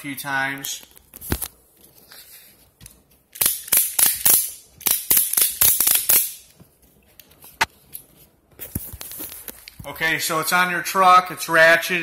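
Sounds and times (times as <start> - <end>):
ratchet strap clicking: 3.4 - 6.4.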